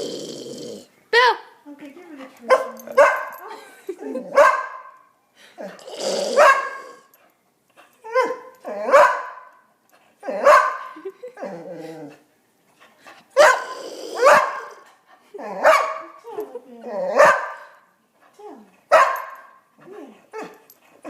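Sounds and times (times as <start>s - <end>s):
dog barking: 2.5s - 3.4s, 4.3s - 5.0s, 6.3s - 7.1s, 8.2s - 9.5s, 10.3s - 10.9s, 13.4s - 14.8s, 15.6s - 16.2s, 17.2s - 17.7s, 18.9s - 19.6s.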